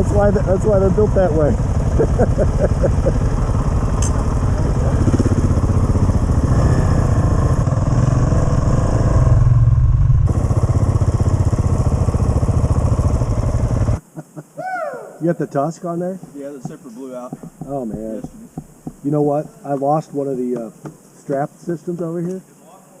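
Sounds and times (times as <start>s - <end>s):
motorcycle engine running: 0.0s - 14.0s.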